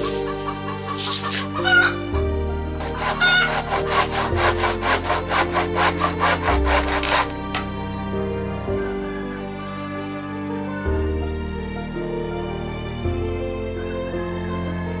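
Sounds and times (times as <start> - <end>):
hand saw cutting wood: 0.0 - 2.0, 2.8 - 7.7
background music with held notes: 0.0 - 15.0.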